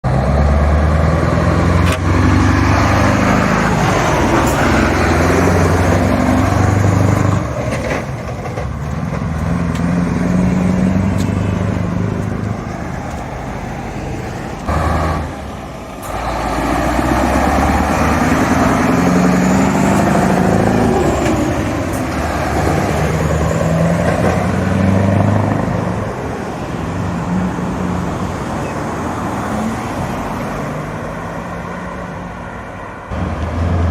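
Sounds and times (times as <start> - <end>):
truck diesel engine changing gear: 0.0 - 26.4.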